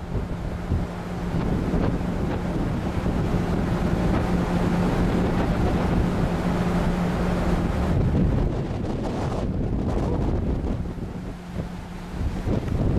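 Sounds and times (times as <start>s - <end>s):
sea waves roaring: 0.0s - 12.9s
steady low hum: 0.0s - 12.9s
wind buffeting microphone: 0.0s - 12.9s.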